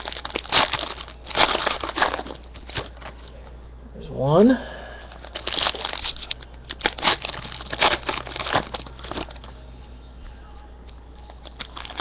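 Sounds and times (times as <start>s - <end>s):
card wrappers crinkling and tearing: 0.0s - 3.3s, 5.1s - 9.6s, 10.8s - 12.0s.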